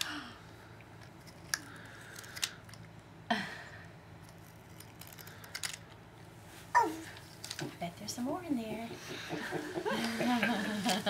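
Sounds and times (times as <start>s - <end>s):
toy car parts clicking and snapping: 1.0s - 3.0s, 4.2s - 6.0s.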